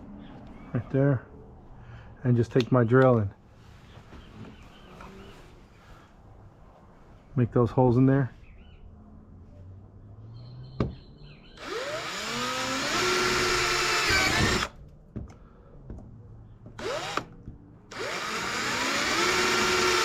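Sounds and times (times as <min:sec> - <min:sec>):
power drill whining: 0:11.6 - 0:14.8, 0:16.8 - 0:17.3, 0:17.9 - 0:20.0.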